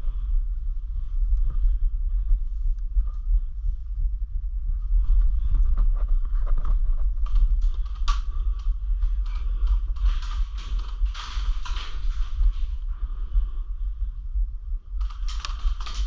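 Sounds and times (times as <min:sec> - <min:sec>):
low wind rumble on microphone: 0:00.0 - 0:16.0
gear rustling and clicking: 0:05.2 - 0:12.9, 0:15.0 - 0:16.0.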